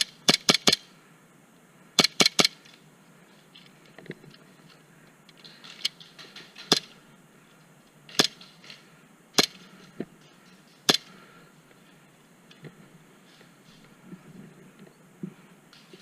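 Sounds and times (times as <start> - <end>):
airsoft guns firing single shots: 0.0 - 0.9, 2.0 - 2.6.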